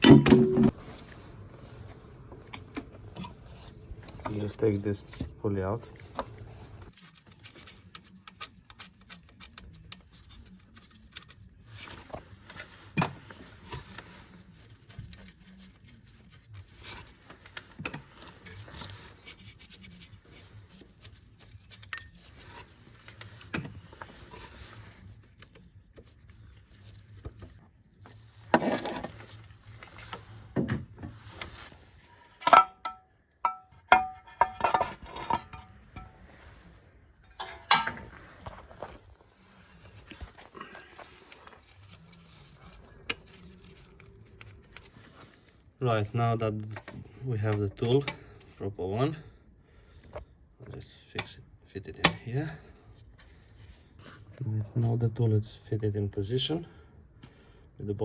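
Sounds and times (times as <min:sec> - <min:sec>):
metal tools clinking and knocking: 0:21.7 - 0:22.6, 0:32.3 - 0:36.2, 0:37.2 - 0:38.2.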